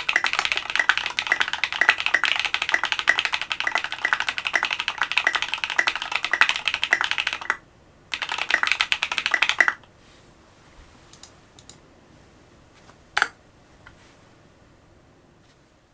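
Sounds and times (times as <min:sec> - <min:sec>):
mechanical keyboard typing: 0:00.0 - 0:09.9.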